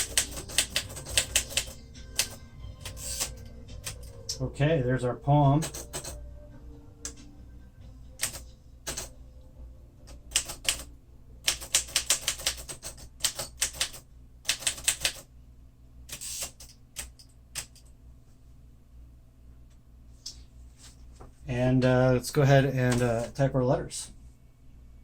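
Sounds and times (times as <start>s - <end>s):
manual typewriter clicking: 0.0s - 4.1s, 5.6s - 6.2s, 8.2s - 9.1s, 10.1s - 15.3s.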